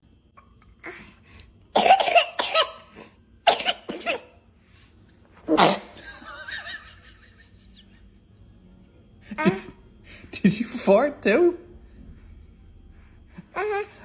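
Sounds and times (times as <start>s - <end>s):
baby sneezing and coughing: 1.7s - 4.4s, 5.5s - 6.0s.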